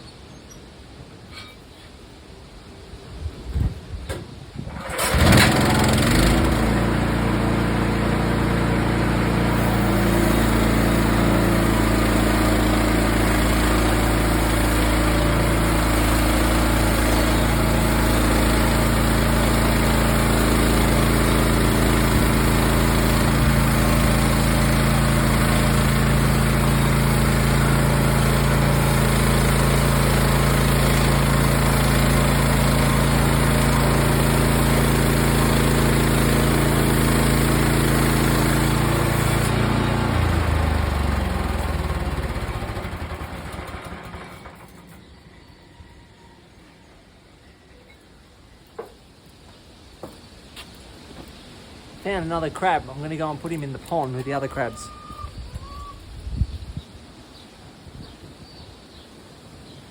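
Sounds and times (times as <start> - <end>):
sawmill engine running: 4.7 - 45.0, 52.1 - 55.1.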